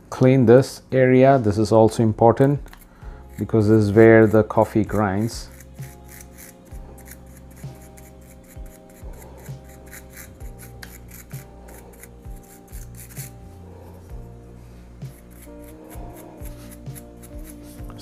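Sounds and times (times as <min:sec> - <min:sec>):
soft background music: 0:00.0 - 0:18.0
brush scrubbing grinder: 0:02.7 - 0:13.6, 0:15.0 - 0:18.0.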